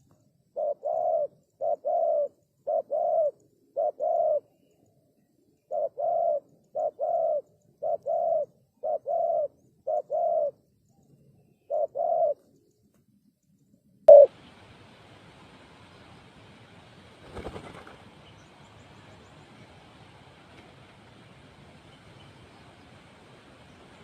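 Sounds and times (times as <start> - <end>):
faint steady hiss: 0.0 - 24.0
dove cooing: 0.6 - 4.6, 5.6 - 10.6, 11.6 - 12.4, 14.1 - 14.3.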